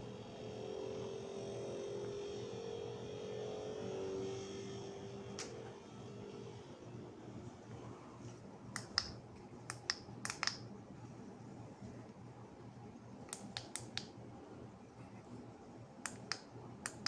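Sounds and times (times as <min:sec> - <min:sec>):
sharp clicks: 0:08.8 - 0:10.6, 0:13.3 - 0:14.1, 0:16.1 - 0:17.0.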